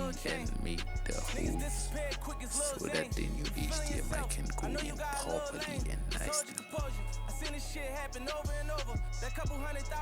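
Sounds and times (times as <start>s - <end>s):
rapping over a beat: 0.0s - 10.0s
deep kick drum: 3.1s - 4.6s, 8.5s - 9.6s.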